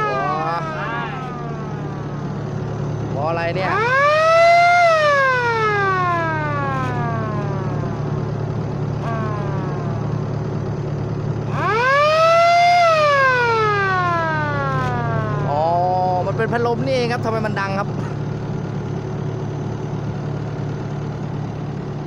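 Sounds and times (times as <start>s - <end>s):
siren wailing: 0.0s - 17.4s
steady low hum: 0.0s - 21.7s.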